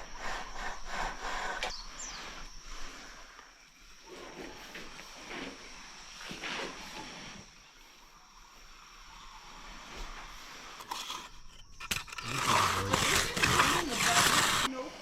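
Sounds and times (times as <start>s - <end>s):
loud rough scraping: 10.8s - 14.7s.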